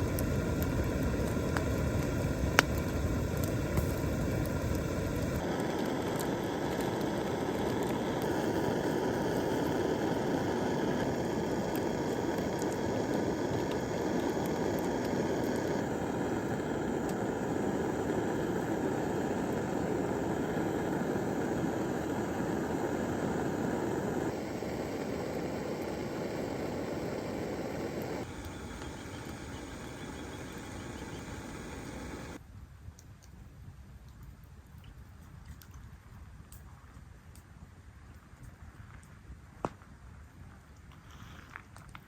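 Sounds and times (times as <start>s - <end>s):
steady rushing noise: 0.0s - 32.4s.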